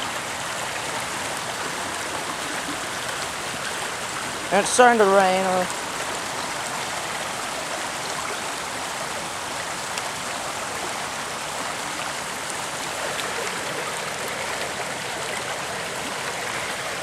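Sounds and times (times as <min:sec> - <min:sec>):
creek rushing: 0:00.0 - 0:17.0
faint water drips: 0:05.6 - 0:17.0.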